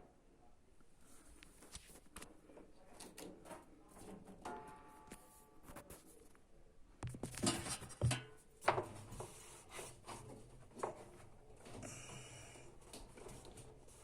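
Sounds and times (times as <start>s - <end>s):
scraping and rubbing: 7.2s - 14.0s.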